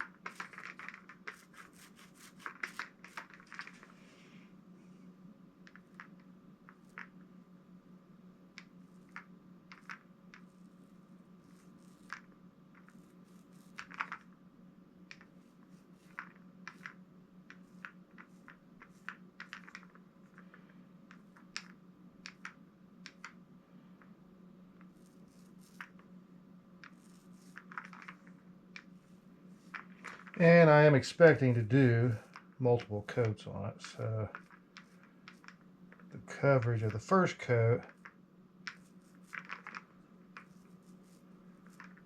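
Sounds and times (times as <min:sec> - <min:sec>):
paint roller clicks and taps: 0:00.0 - 0:03.7, 0:16.0 - 0:20.0, 0:21.1 - 0:23.4
steady low hum: 0:00.0 - 0:42.0.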